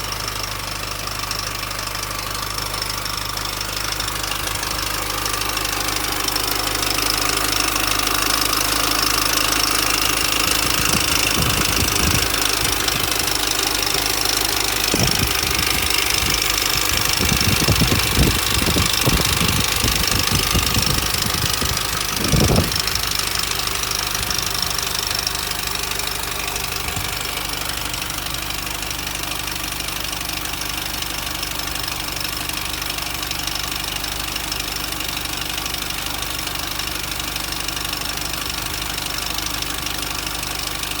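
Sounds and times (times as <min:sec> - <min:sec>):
car engine running: 0:00.0 - 0:41.0
timing chain rattle: 0:06.4 - 0:28.5.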